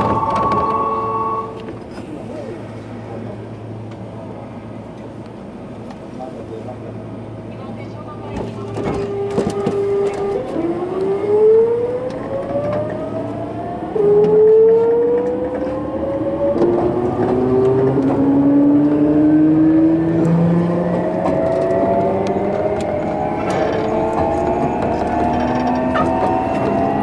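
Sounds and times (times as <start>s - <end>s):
electric train motor whine: 0.0s - 1.7s
train rumble: 0.0s - 27.0s.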